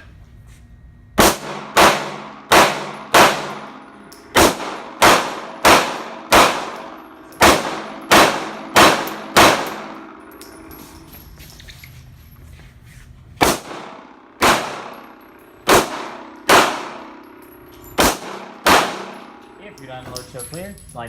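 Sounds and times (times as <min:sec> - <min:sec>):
pistol shots: 0:01.2 - 0:10.2, 0:13.4 - 0:17.4, 0:18.0 - 0:19.4.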